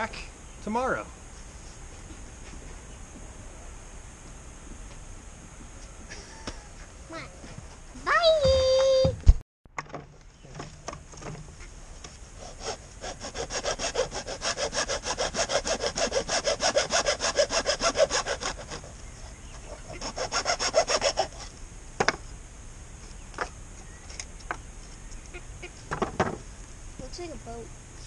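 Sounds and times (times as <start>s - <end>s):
hand saw cutting plastic pipe: 12.4s - 18.9s, 19.6s - 21.5s.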